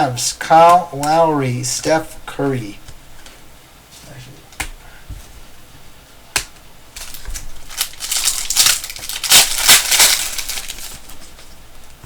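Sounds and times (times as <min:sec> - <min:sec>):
foil wrapper crinkling and tearing: 0:07.0 - 0:11.4.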